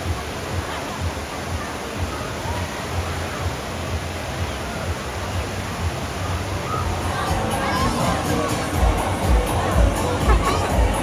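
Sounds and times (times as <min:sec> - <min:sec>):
water rushing and splashing: 0:00.0 - 0:11.0
distant voices: 0:06.1 - 0:11.0.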